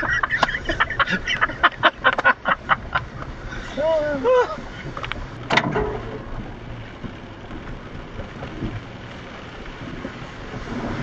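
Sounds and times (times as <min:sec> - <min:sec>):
vehicle engine and tyre noise: 0:00.0 - 0:11.0
light knocks and rattles: 0:04.9 - 0:09.2.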